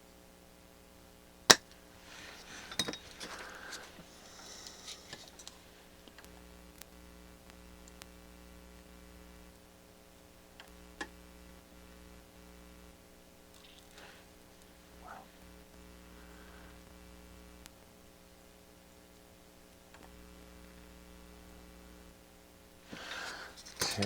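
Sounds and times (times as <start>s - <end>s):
steady low hum: 0.0s - 24.0s
scraping and rattling of parts: 2.2s - 5.5s, 23.6s - 24.0s.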